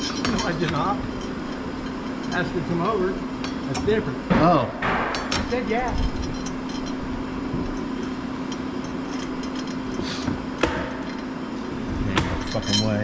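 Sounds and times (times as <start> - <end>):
steady mechanical hum: 0.0 - 13.0.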